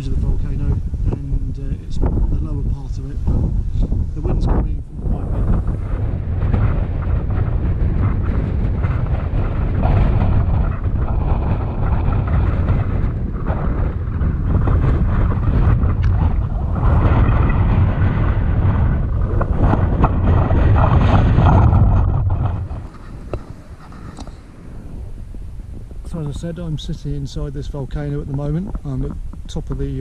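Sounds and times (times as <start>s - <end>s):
strong wind buffeting microphone: 0.0s - 30.0s.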